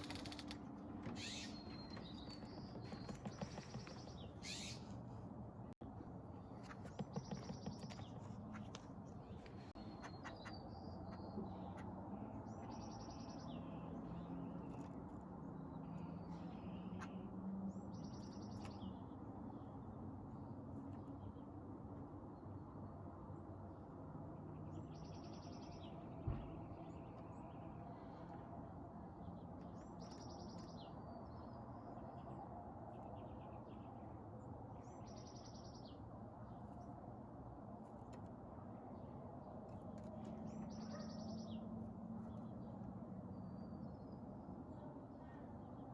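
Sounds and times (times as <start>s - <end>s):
harsh rasping bird calls: 0.0s - 5.2s
songbird trilling: 1.0s - 4.9s.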